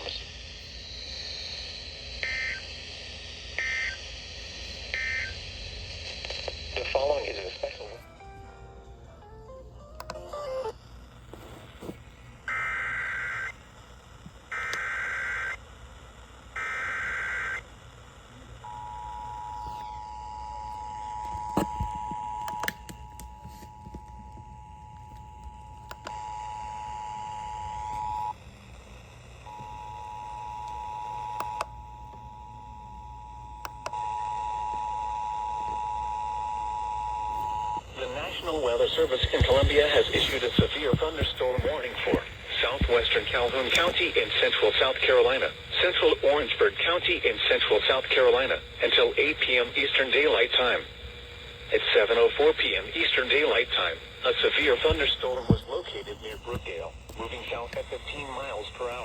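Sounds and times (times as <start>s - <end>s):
screeching data tones: 4.8s - 5.8s.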